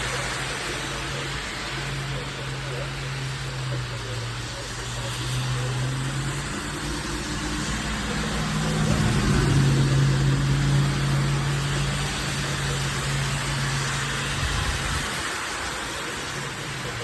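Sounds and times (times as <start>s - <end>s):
even hiss: 0.0s - 17.0s
low motor hum: 0.0s - 17.0s.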